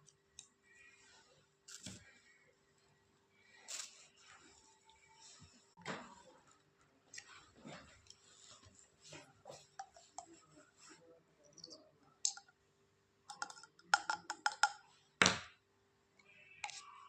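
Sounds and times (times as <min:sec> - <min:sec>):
small objects clicking and knocking: 0:13.3 - 0:15.5.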